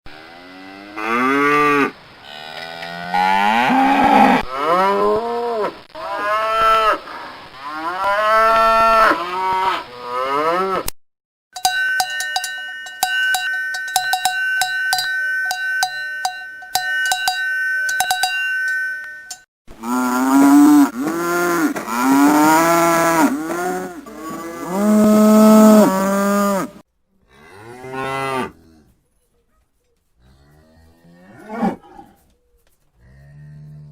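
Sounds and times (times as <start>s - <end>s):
cattle mooing: 0.1s - 5.3s, 6.0s - 10.9s, 19.8s - 28.8s
cowbell clanking: 11.6s - 19.5s.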